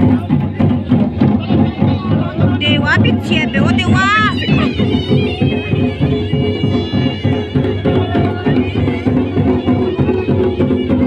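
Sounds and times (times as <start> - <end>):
fast steady drumbeat: 0.0 - 11.0
reedy wind melody: 2.6 - 11.0.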